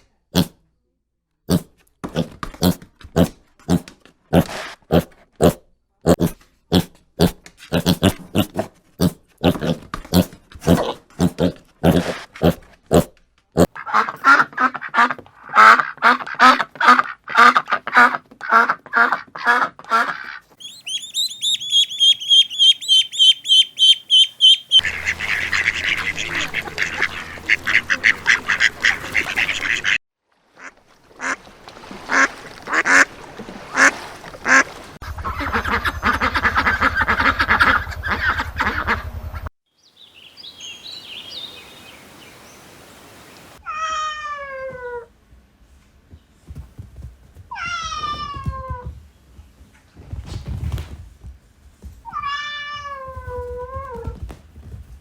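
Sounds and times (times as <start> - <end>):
ducks quacking: 13.6 - 30.0, 32.1 - 33.1, 33.7 - 39.5
high repeated peeps: 20.6 - 24.9
long calls falling in pitch: 20.6 - 25.8.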